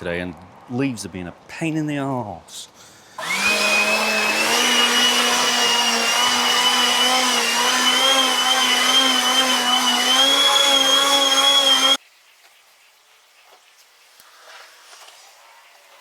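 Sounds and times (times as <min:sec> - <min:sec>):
small electric motor whining: 0:03.2 - 0:12.0.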